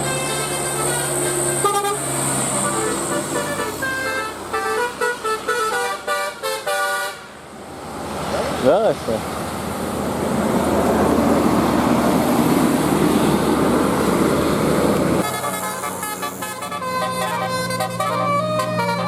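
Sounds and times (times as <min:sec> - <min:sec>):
bus horn playing melody: 0:00.0 - 0:07.4, 0:15.2 - 0:19.0
bus engine and road noise: 0:00.0 - 0:19.0.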